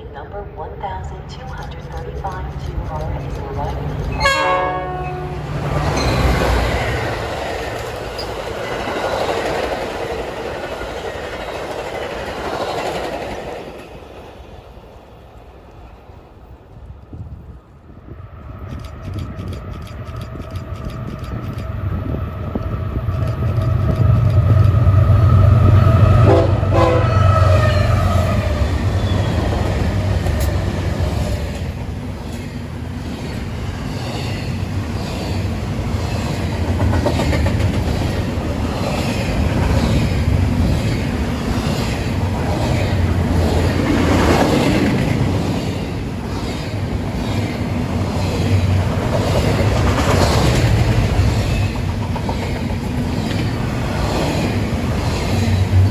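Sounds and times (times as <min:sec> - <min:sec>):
rail cars rumbling and clattering: 0:00.0 - 0:55.9
train horn: 0:04.1 - 0:06.6, 0:24.9 - 0:29.4.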